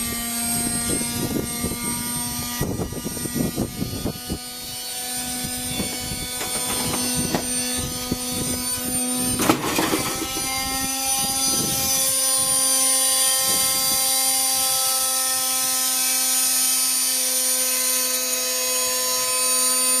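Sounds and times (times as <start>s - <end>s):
washing machine spin whine: 0.0s - 17.2s
machine knocking: 5.9s - 7.6s.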